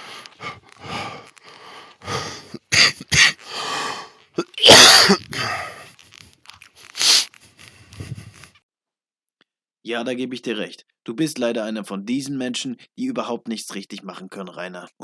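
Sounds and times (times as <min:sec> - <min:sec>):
man puffing and wheezing: 0:00.0 - 0:06.2, 0:06.9 - 0:08.6
man coughing: 0:02.6 - 0:03.4, 0:04.4 - 0:05.9.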